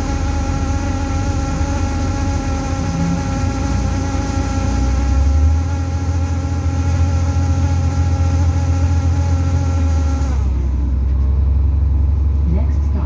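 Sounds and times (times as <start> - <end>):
pitched buzzing vibration: 0.0 - 11.1
bus rumble: 10.4 - 13.0.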